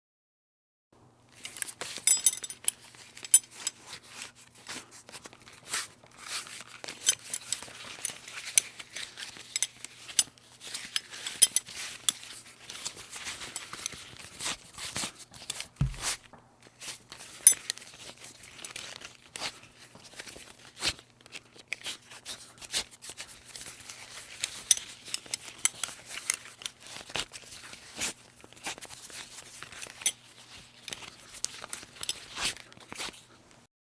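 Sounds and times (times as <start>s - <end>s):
metal buckle clicking: 1.4s - 3.7s, 15.5s - 16.2s
strap rustling: 15.6s - 16.3s.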